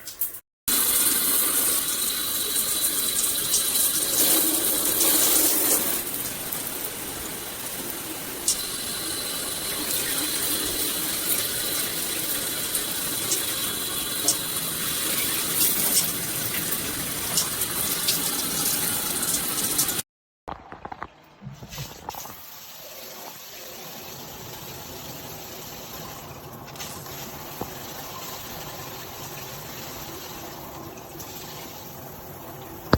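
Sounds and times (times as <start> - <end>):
shower head spraying water: 0.7 - 20.0.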